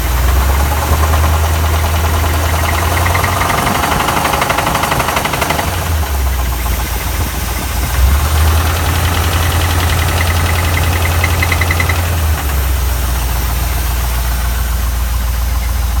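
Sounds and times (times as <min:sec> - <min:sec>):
car engine idling with knock: 0:00.0 - 0:16.0.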